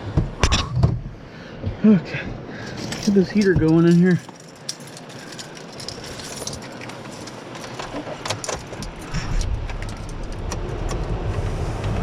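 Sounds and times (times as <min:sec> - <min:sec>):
car engine rumbling: 0:00.0 - 0:12.0
car keys jangling: 0:02.7 - 0:10.5.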